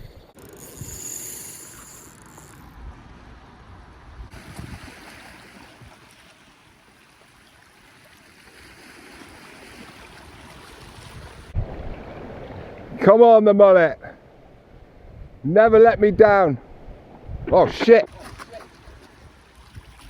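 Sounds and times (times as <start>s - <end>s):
wind buffeting microphone: 2.7s - 6.1s, 10.3s - 13.0s, 14.2s - 17.8s
sea washing on shore: 4.3s - 13.1s.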